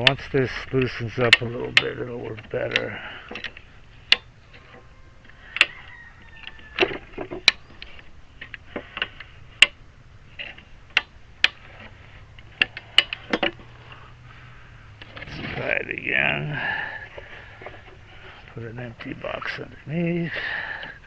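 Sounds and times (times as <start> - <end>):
gear mechanism clicking and knocking: 0.0 - 9.8, 10.4 - 13.7.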